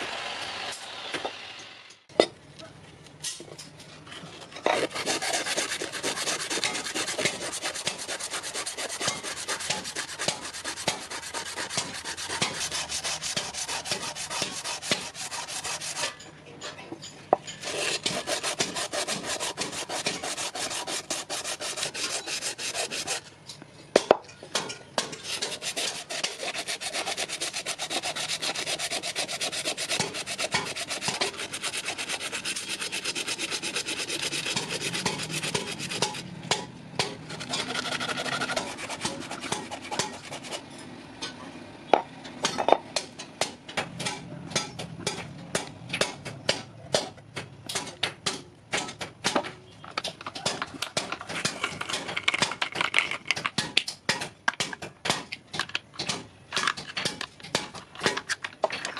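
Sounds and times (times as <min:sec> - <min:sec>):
abrasive scraping knife steel: 0:04.4 - 0:16.4, 0:17.0 - 0:23.3, 0:24.6 - 0:41.4.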